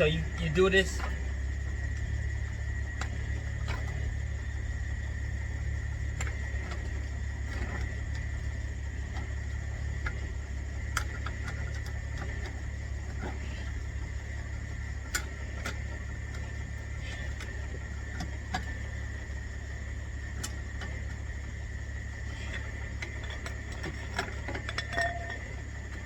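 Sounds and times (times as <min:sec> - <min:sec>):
steady hum: 0:00.0 - 0:26.0.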